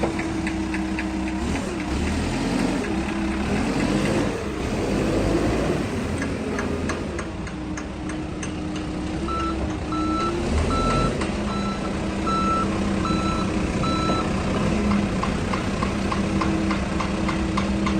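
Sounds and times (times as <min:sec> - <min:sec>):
diesel engine running: 0:00.0 - 0:17.9
reversing alarm beeping: 0:09.3 - 0:14.3.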